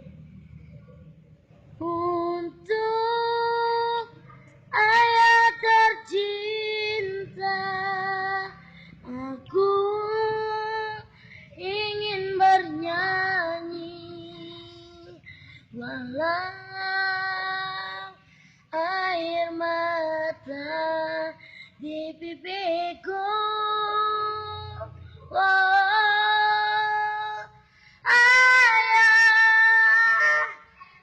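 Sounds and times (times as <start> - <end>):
singer breathing: 8.6 - 9.1, 11.1 - 11.6, 15.2 - 15.8, 18.2 - 18.8, 21.4 - 21.8, 27.6 - 28.1.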